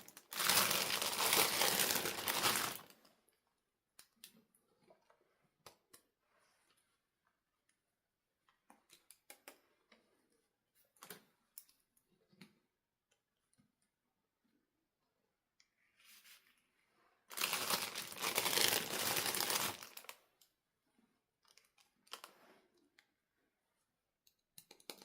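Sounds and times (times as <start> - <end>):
plastic packaging crinkling: 0.0 - 3.0, 17.3 - 20.2.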